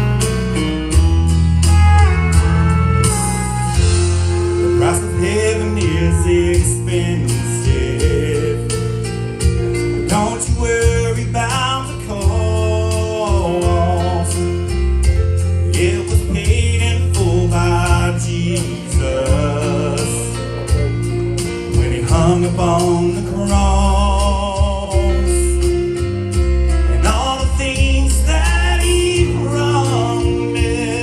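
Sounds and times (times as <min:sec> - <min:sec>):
live country gospel band: 0:00.0 - 0:31.0
people singing: 0:04.8 - 0:09.0, 0:15.8 - 0:21.0, 0:21.7 - 0:25.0, 0:26.9 - 0:31.0.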